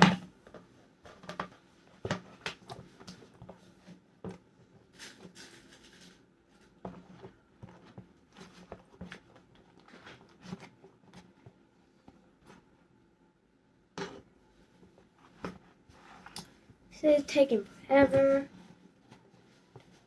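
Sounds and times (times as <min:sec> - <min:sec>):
spoon stirring slime: 0:02.6 - 0:12.8.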